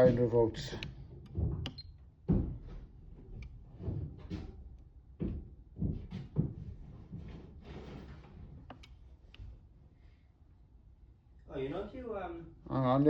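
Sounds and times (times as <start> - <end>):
objects knocking and clunking: 0.0 - 9.6.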